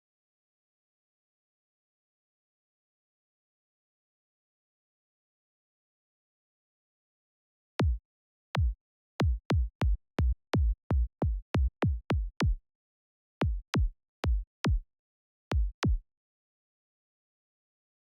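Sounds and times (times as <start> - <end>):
synthesized kick drum hits: 7.8 - 8.0, 8.6 - 12.6, 13.4 - 14.8, 15.6 - 16.0.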